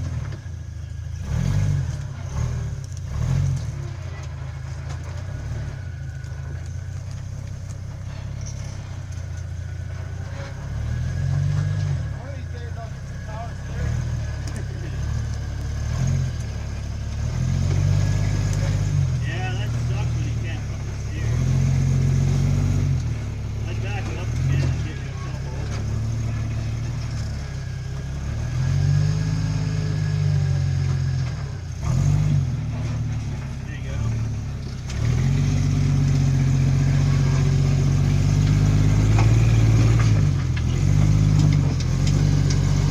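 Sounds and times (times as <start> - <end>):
vehicle engine droning: 0.0 - 42.9.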